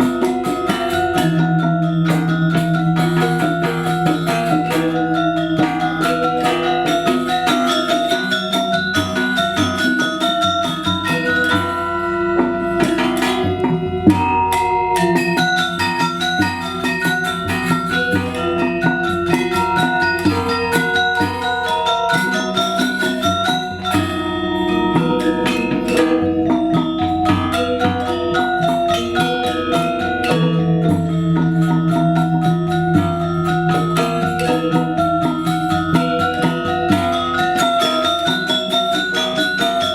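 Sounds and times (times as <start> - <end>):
drums: 0.0 - 39.9
metallophones playing rapid melody: 0.0 - 39.9.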